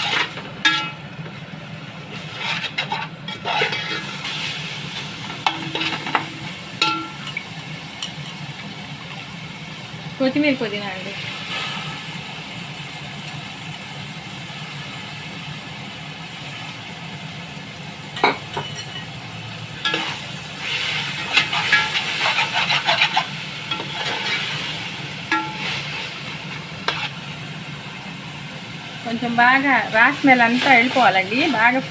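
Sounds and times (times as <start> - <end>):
ladle scraping and clinking pot: 0.0 - 1.0, 2.2 - 4.4, 19.8 - 20.2, 21.1 - 24.6
food sizzling in a pot: 0.0 - 31.9.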